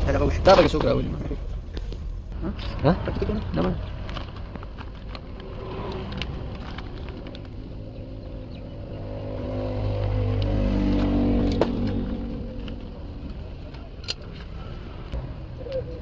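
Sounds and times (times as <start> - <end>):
vehicle engine passing by: 5.1 - 16.0.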